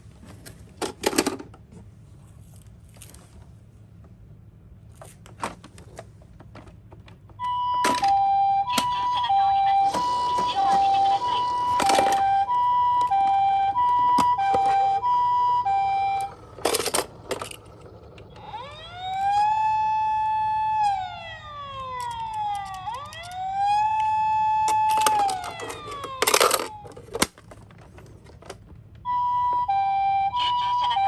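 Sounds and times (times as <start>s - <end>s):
two-tone toy siren: 7.4s - 27.3s, 29.0s - 31.0s
wailing toy siren: 7.4s - 27.3s, 29.0s - 31.0s.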